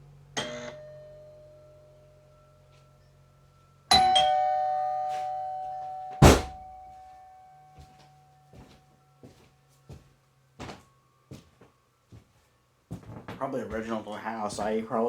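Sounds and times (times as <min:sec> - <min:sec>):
doorbell chime ringing: 0:03.9 - 0:09.4.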